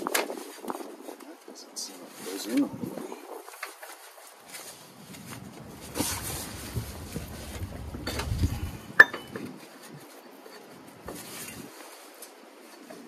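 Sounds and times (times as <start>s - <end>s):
metal part rustling and scraping: 3.6s - 13.0s
low rumble: 5.3s - 9.0s.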